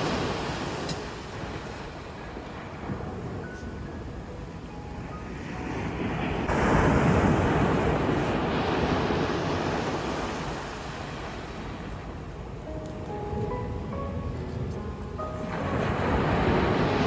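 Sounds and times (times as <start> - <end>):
sea wave crashing on shore: 0.0 - 3.3, 5.4 - 12.1, 15.5 - 17.0.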